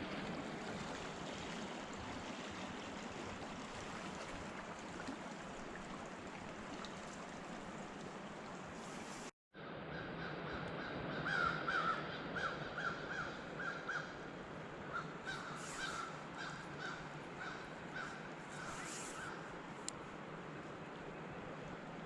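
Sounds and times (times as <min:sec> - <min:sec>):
flowing water rushing: 0:00.0 - 0:09.3, 0:14.6 - 0:22.0
crows cawing: 0:10.2 - 0:14.2, 0:14.9 - 0:19.4.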